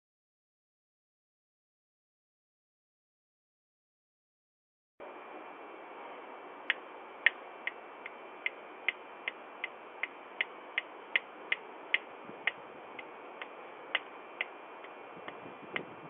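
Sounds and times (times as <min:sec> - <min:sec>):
microphone hiss: 0:05.0 - 0:16.0
sharp ticks: 0:06.7 - 0:16.0.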